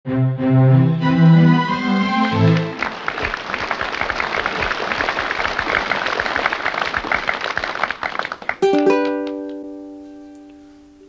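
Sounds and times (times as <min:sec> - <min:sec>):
crowd clapping: 0:02.4 - 0:09.8
strummed ukulele chord: 0:08.6 - 0:10.8.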